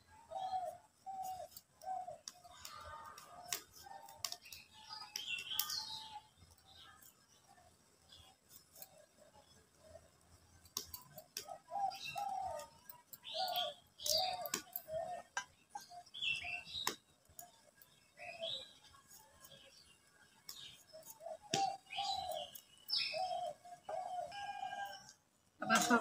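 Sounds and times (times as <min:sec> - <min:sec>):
bird cooing: 0:00.1 - 0:03.5, 0:11.4 - 0:16.7, 0:21.0 - 0:26.0
high bird chirps: 0:00.2 - 0:07.2, 0:10.9 - 0:25.1.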